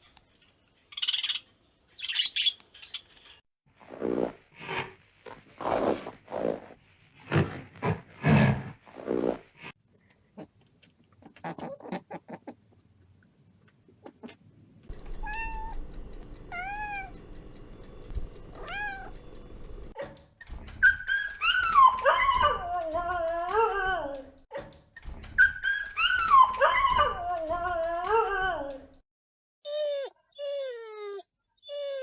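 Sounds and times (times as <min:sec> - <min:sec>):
cat meowing: 0:15.1 - 0:15.8, 0:16.5 - 0:17.2, 0:18.5 - 0:19.2.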